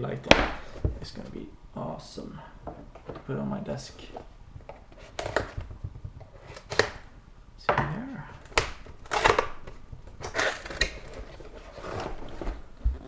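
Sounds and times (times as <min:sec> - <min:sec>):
packaging rustling and scraping: 0:04.0 - 0:07.0, 0:08.4 - 0:13.0.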